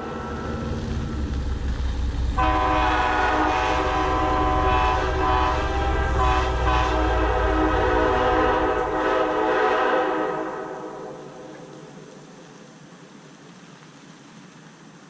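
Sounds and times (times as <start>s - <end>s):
horns sounding a chord: 0.0s - 1.6s, 2.3s - 11.3s
low rumble: 0.0s - 9.6s.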